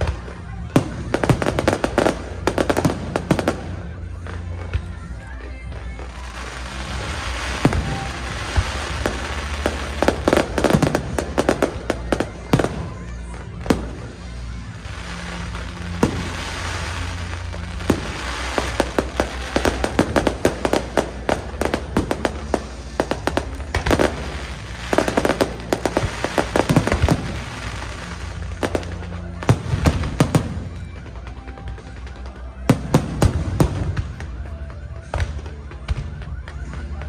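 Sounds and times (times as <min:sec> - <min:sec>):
fireworks bangs and crackling: 0:00.0 - 0:37.0.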